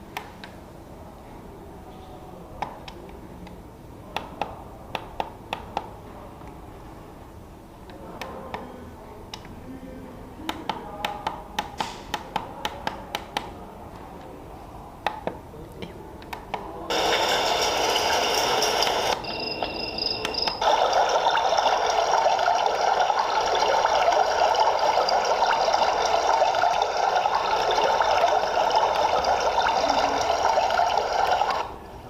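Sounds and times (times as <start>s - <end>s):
running water sound from speaker: 16.9s - 31.7s
alarm clock buttons clicking: 18.7s - 20.6s.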